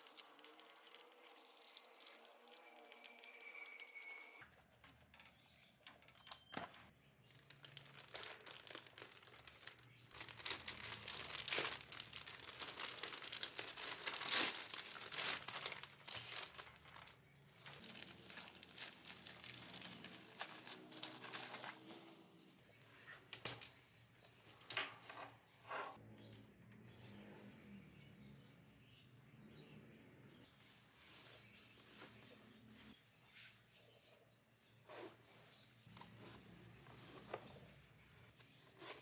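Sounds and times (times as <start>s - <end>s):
crinkling and rustling: 0.0s - 26.0s, 34.9s - 39.0s.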